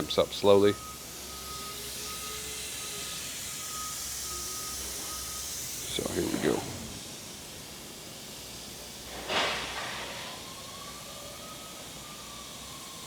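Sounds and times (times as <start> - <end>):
compressed air hissing: 5.7 - 7.4
faint whine: 5.8 - 7.2.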